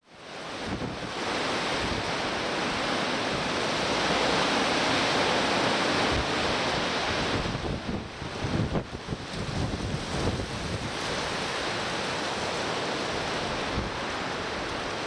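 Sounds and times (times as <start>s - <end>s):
strong gusting wind: 0.2s - 15.0s
wind buffeting on microphone: 0.5s - 2.8s, 3.6s - 11.9s.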